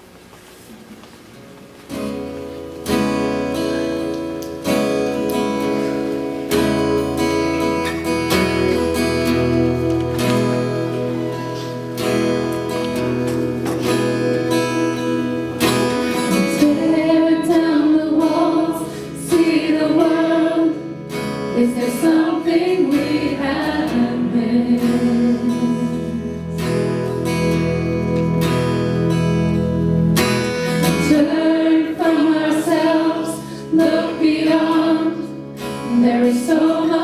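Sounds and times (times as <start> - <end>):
strummed acoustic guitar: 1.4 - 37.0.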